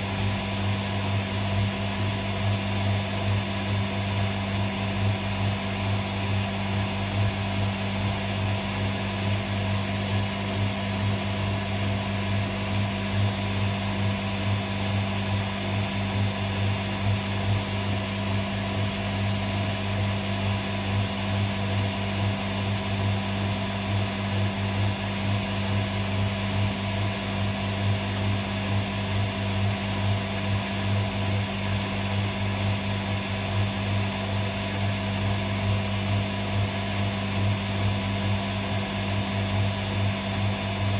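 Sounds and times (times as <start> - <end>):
washing machine humming: 0.0 - 40.9.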